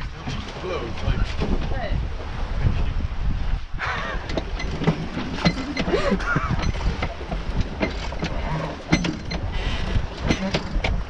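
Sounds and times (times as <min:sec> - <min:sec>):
wind and water rumble: 0:00.0 - 0:11.0
winch ratcheting and creaking: 0:04.2 - 0:11.0.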